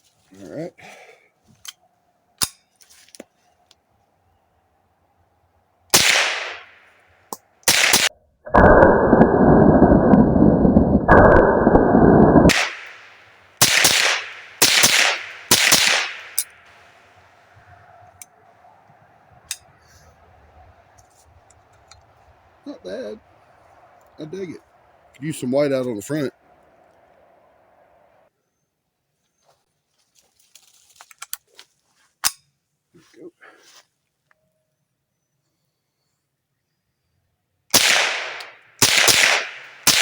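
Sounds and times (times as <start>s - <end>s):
rifle shots: 5.9s - 6.8s, 7.7s - 9.3s, 11.1s - 16.5s, 37.7s - 40.0s
loud rushing noise: 8.5s - 13.2s.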